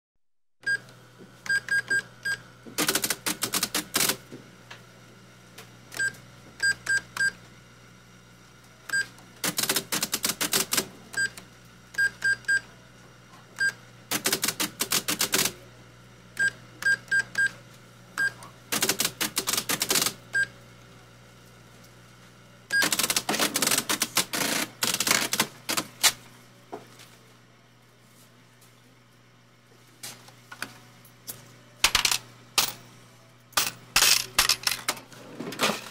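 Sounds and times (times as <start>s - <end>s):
cash register key beeps: 0.6s - 0.8s, 1.5s - 4.2s, 6.0s - 7.4s, 8.9s - 11.4s, 12.0s - 12.7s, 16.4s - 17.6s, 18.2s - 20.5s, 22.7s - 25.9s.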